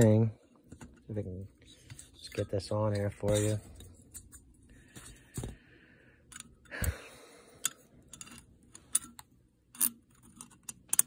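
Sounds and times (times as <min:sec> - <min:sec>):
metal engine parts clicking: 0:07.6 - 0:11.0.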